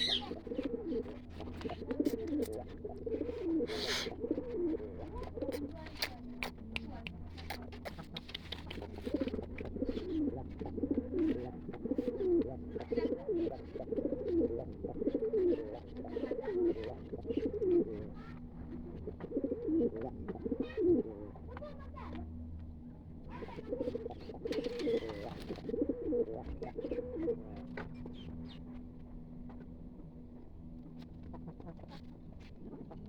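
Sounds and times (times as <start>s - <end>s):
pigeon cooing: 0.0s - 6.8s, 7.4s - 18.1s, 18.7s - 21.1s, 23.5s - 27.4s.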